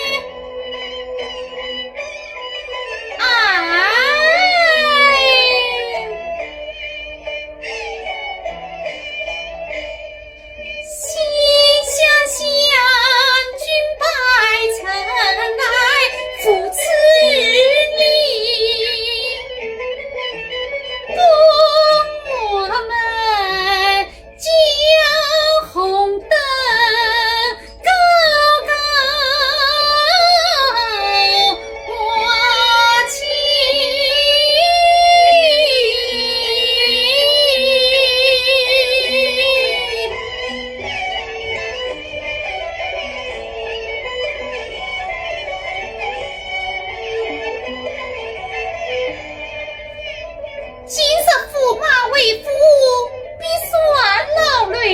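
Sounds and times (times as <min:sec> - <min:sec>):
woman singing opera: 0:00.0 - 0:00.3, 0:03.2 - 0:06.3, 0:10.9 - 0:19.5, 0:21.1 - 0:40.2, 0:50.9 - 0:54.9
instrumental backing: 0:00.0 - 0:54.9.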